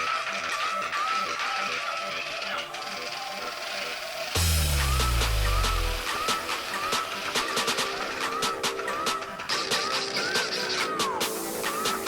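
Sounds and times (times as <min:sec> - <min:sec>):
ticking hi-hats: 0:04.3 - 0:12.0
deep sliding bass note: 0:04.4 - 0:06.2.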